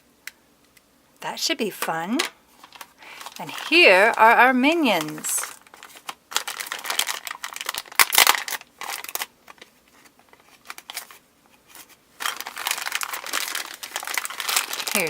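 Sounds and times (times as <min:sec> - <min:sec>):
plastic packaging crinkling: 0:01.8 - 0:15.0.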